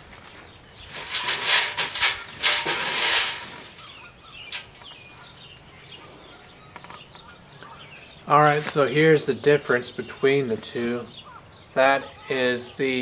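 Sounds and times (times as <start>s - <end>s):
small birds chirping: 0.1s - 1.4s, 3.4s - 13.0s
loud rustling scraping: 0.8s - 4.8s.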